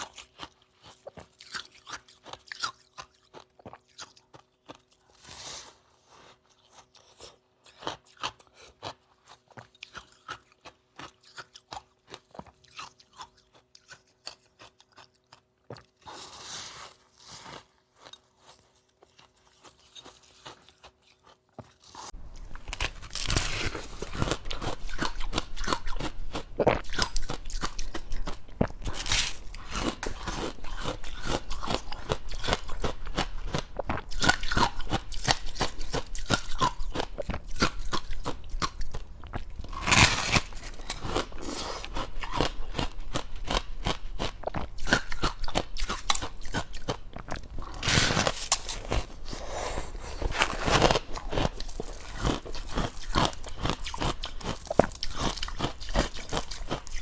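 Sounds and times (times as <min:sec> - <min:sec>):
crunching and chewing frost: 0:00.0 - 0:57.0.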